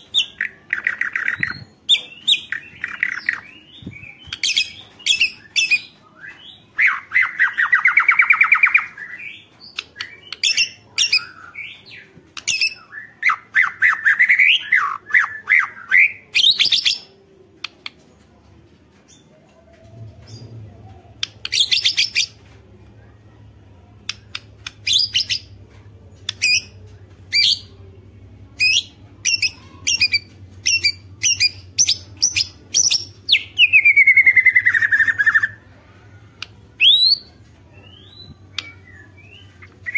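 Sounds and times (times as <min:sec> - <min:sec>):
faint low hum: 0:00.0 - 0:39.9
songbird singing: 0:26.3 - 0:35.6, 0:36.4 - 0:39.9.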